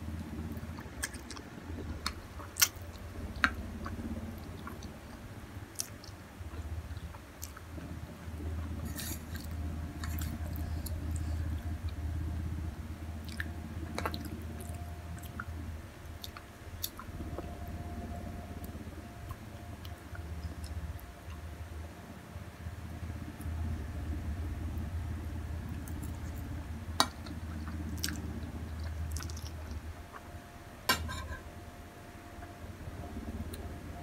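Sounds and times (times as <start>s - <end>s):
person chewing noodles: 0.2s - 7.7s, 8.3s - 12.2s, 13.2s - 17.8s, 25.7s - 30.3s.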